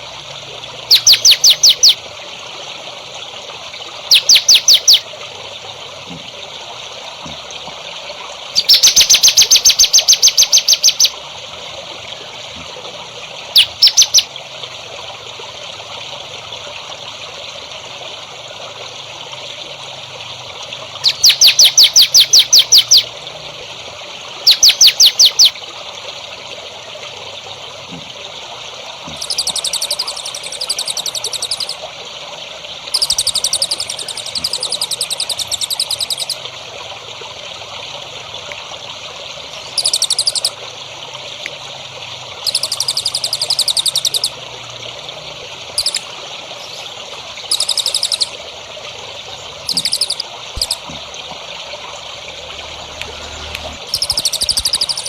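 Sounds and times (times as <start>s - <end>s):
trickle of running water: 0.0s - 55.0s
buzzy high bird trills: 0.9s - 2.0s, 4.1s - 5.0s, 8.6s - 11.1s, 13.6s - 14.3s, 21.0s - 23.1s, 24.5s - 25.5s, 29.1s - 31.8s, 32.9s - 36.4s, 39.7s - 40.5s, 42.4s - 44.3s, 45.8s - 46.9s, 47.5s - 48.4s, 49.6s - 50.9s, 53.8s - 55.0s
songbird singing: 0.9s - 2.0s, 4.1s - 5.0s, 8.6s - 11.2s, 13.6s - 14.3s, 21.0s - 23.1s, 24.5s - 25.6s, 29.1s - 31.8s, 32.9s - 36.4s, 39.6s - 40.6s, 42.4s - 44.3s, 45.8s - 48.4s, 49.6s - 51.0s, 53.4s - 55.0s.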